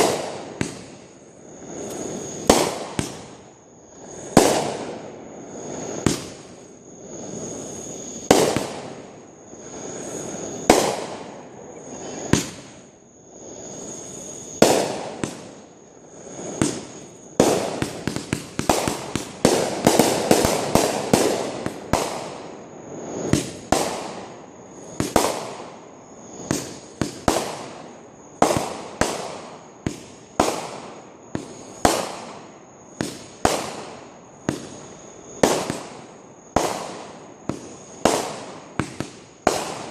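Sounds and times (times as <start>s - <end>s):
fireworks bangs: 0.0s - 39.9s
fireworks hiss: 0.0s - 39.9s.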